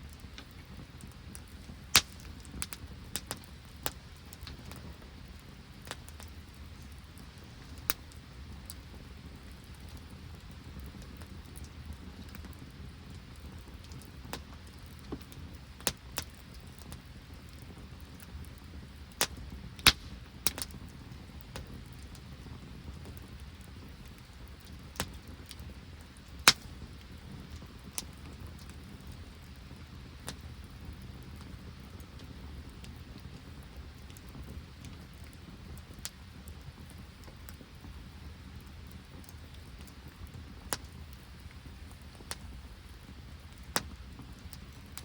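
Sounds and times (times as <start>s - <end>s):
campfire crackling and popping: 0.0s - 45.0s.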